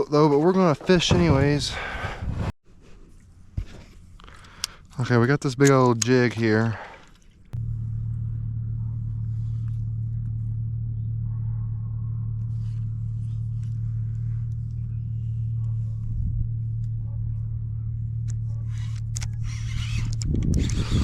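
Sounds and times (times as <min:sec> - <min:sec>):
small motor humming: 0:07.6 - 0:21.0.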